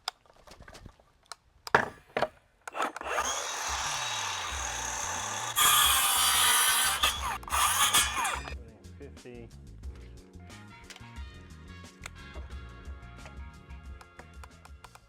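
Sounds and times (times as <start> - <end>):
power saw cutting wood: 2.7 - 8.6.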